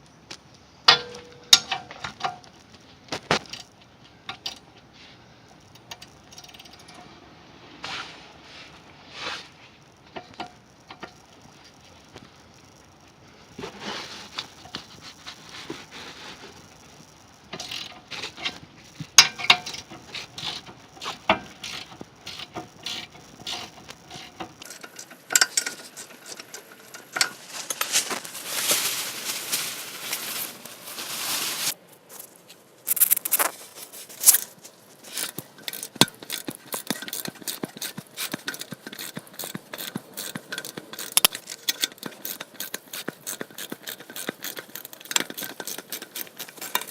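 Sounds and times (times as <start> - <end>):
ratchet clicking: 5.5 - 7.0, 16.7 - 28.0, 34.2 - 46.9
metal clicks and knocks: 17.5 - 28.0
tool scraping metal: 17.5 - 28.2, 32.9 - 46.9.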